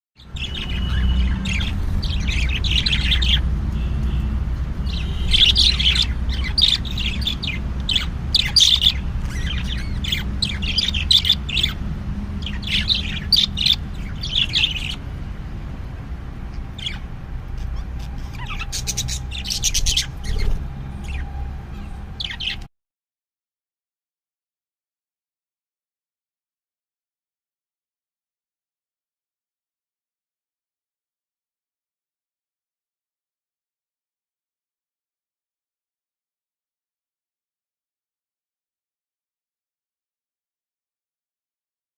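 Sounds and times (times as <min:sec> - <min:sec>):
bird chicks chirping and squawking: 0:00.2 - 0:22.7.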